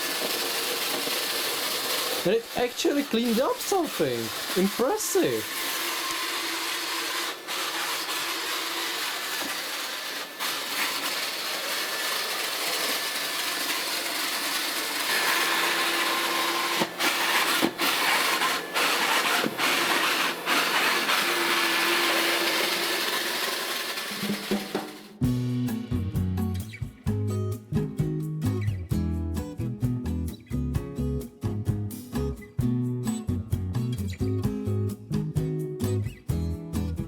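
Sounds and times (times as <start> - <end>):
robot vacuum motor and suction: 0.0 - 25.1.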